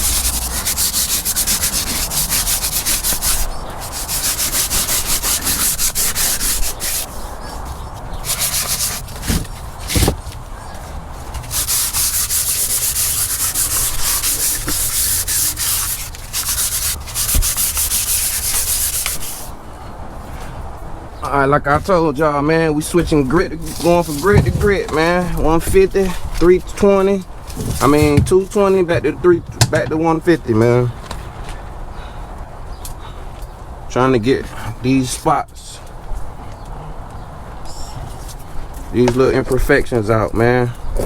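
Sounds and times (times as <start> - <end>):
sandpaper scraping painted surface: 0.0 - 10.4, 11.2 - 19.5, 23.6 - 26.4, 27.5 - 28.2.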